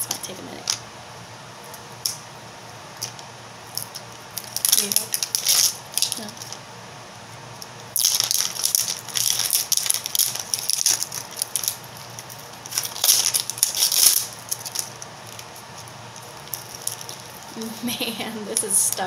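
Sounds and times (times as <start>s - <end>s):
plastic wrap crinkling: 3.0s - 6.6s, 7.6s - 17.8s.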